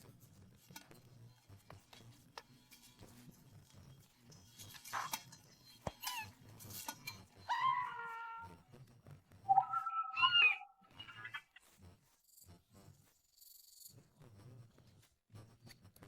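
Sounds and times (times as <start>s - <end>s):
animal cries: 7.5s - 8.6s, 9.5s - 11.5s.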